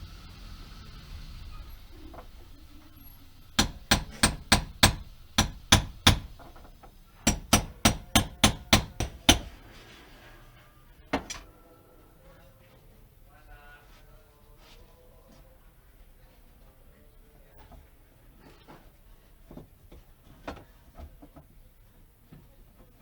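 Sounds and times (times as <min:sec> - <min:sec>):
hammer blows: 0:03.5 - 0:06.6, 0:07.2 - 0:09.6.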